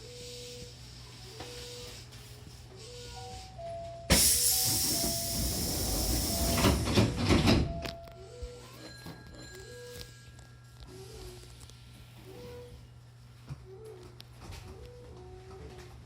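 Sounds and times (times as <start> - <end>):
loud hiss of released air: 4.1 - 6.9.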